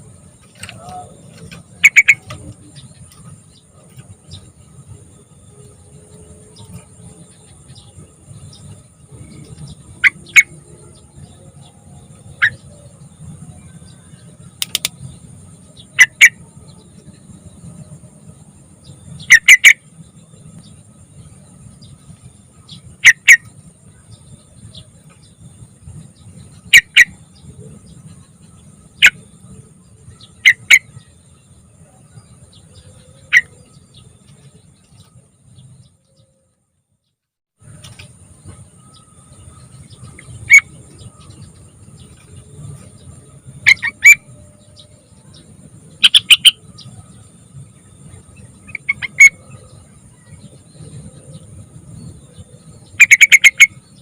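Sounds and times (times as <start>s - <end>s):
bulbul giving sharp calls: 0.5s - 3.3s, 9.3s - 10.6s, 15.9s - 16.4s, 19.2s - 19.8s, 26.7s - 27.2s, 30.2s - 31.1s, 39.9s - 41.3s, 43.6s - 44.3s, 46.0s - 46.6s, 48.6s - 49.6s, 53.0s - 53.8s.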